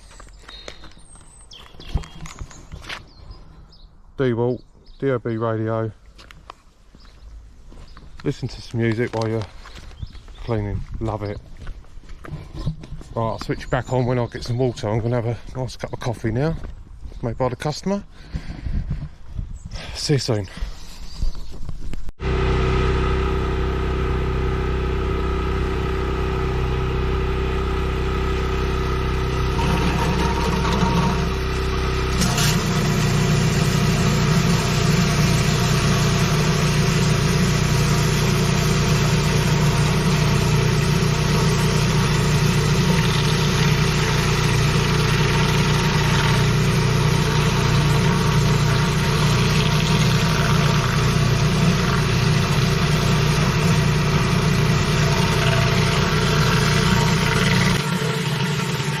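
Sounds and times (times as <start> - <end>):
pressure washer engine running: 22.2 - 59.0.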